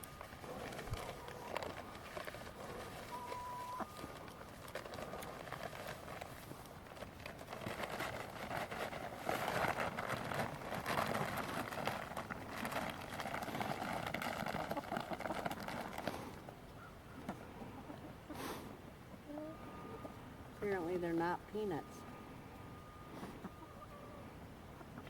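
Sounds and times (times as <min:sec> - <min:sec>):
chickens pecking and scratching: 0:00.0 - 0:25.0.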